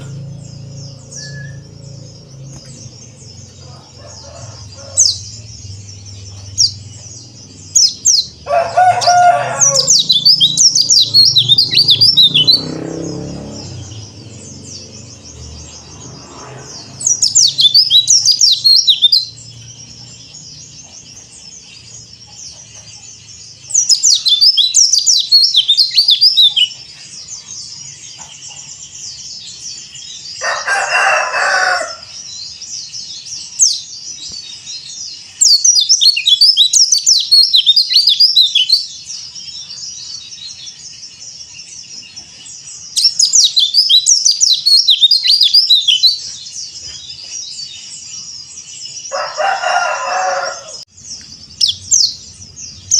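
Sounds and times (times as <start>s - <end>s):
lower bird call: 0.0s - 7.1s, 7.7s - 15.1s
bird twittering: 0.0s - 52.9s.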